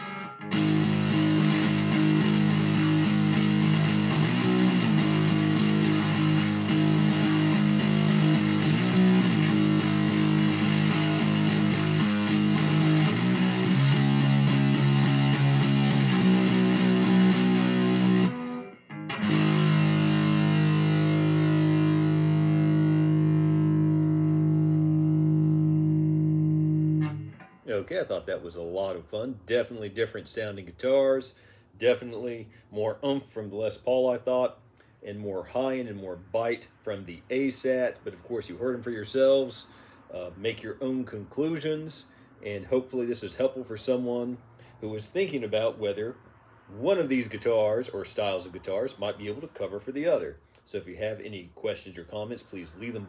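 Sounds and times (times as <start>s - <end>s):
distorted electric guitar chords: 0.0s - 27.7s.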